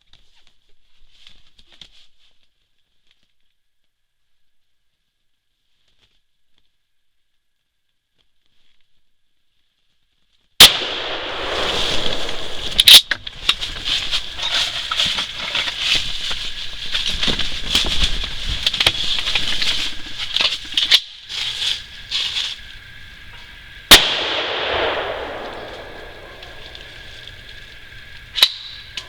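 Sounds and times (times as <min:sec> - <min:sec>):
shotgun shots: 0:10.6 - 0:13.1, 0:23.9 - 0:27.1
crackling hiss: 0:10.6 - 0:29.0.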